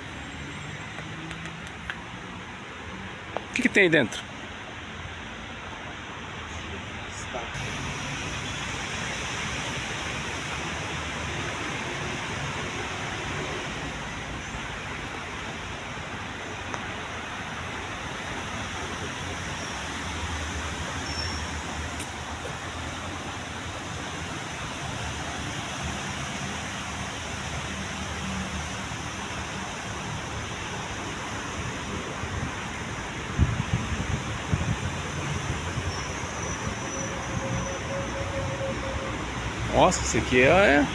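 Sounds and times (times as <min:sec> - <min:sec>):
distant traffic rumble: 0:00.0 - 0:40.9.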